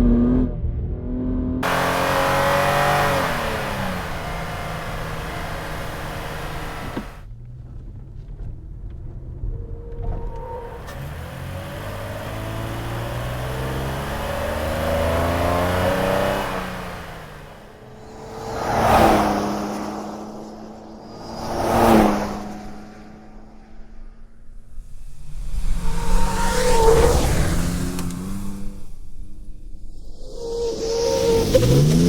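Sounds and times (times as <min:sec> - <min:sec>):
truck engine accelerating: 0:00.0 - 0:07.9, 0:09.7 - 0:23.6
truck passing by: 0:01.6 - 0:07.2, 0:10.1 - 0:23.8.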